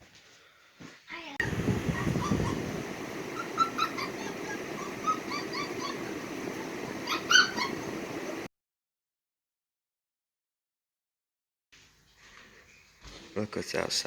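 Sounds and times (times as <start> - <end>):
background hiss: 1.0 - 8.5
puppy whining: 1.9 - 8.0.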